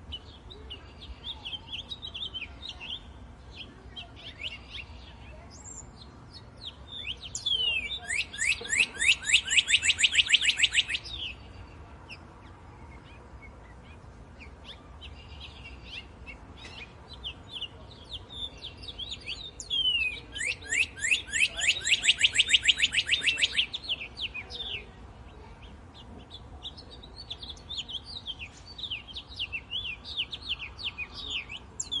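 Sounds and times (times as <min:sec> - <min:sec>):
songbirds chirping: 0:00.0 - 0:32.0
fast bird trills: 0:07.4 - 0:11.2, 0:19.6 - 0:24.0.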